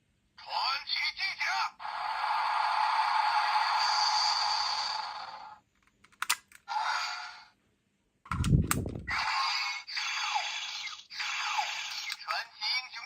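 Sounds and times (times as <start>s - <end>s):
toy electronic sound effects: 1.4s - 5.6s, 9.1s - 13.0s
sharp plastic clicks: 5.8s - 6.6s, 8.3s - 9.0s.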